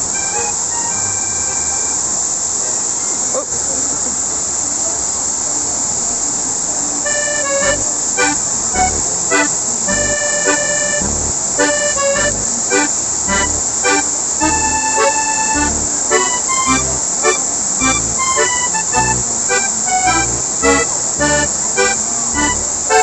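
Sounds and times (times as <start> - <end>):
instrumental music with low beat: 7.5 - 23.0.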